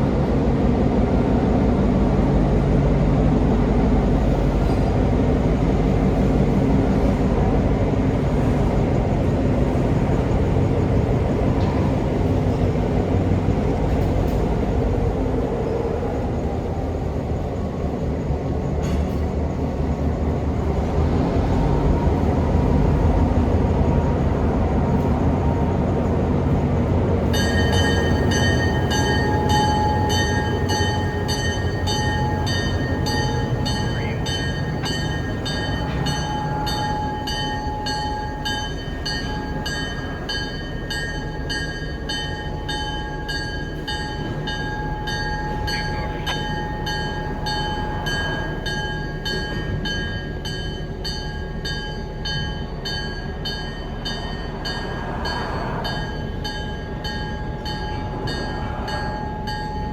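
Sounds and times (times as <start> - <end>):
diesel locomotive engine rumbling: 0.0 - 59.9
pulsing high ringing: 27.3 - 59.9.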